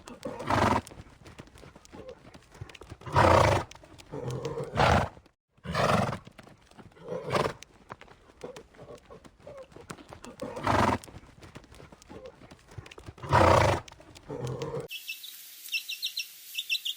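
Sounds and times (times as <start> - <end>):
hooves clopping: 0.0 - 14.9
horses neighing: 0.0 - 14.9.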